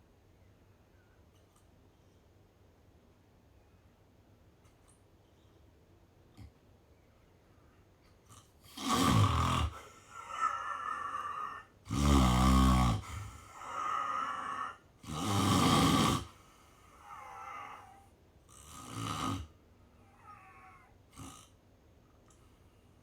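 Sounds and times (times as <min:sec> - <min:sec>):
person snoring: 0:08.7 - 0:21.5.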